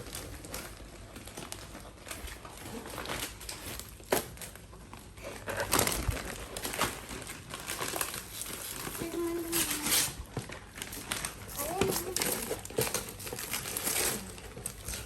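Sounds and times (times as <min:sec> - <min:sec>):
wrapping paper crinkling: 0:00.0 - 0:15.0
paper tearing: 0:05.4 - 0:15.0.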